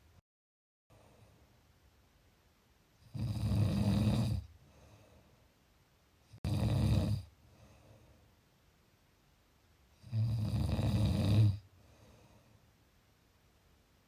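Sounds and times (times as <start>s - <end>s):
person snoring: 3.1s - 4.5s, 6.4s - 7.3s, 10.0s - 11.6s.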